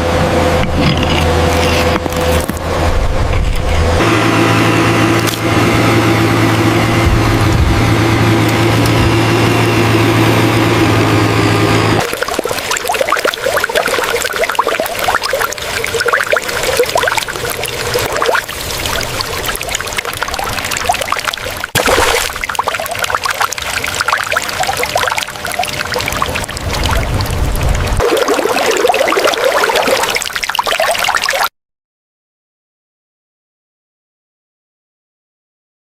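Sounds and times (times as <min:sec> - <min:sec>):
machine engine hum: 0:00.0 - 0:28.3
water pouring and trickling: 0:12.0 - 0:31.5.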